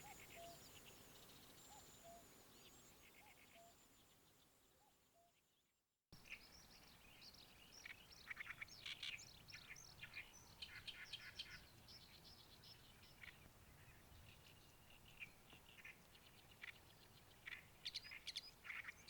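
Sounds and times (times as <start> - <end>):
songbirds chattering: 6.2 - 19.0.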